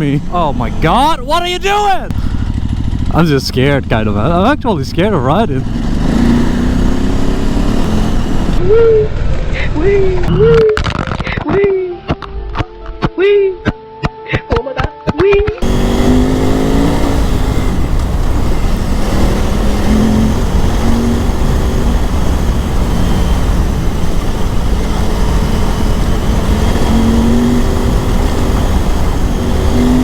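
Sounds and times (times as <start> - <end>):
motorcycle engine revving: 0.0 - 9.6, 15.6 - 30.0
riding wind noise: 0.0 - 11.5, 15.6 - 30.0.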